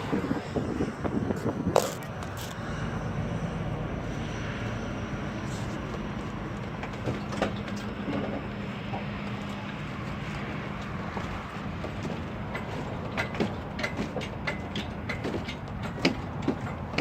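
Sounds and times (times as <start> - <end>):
steady low hum: 0.0 - 13.0
metallic clanks and knocks: 11.2 - 17.0.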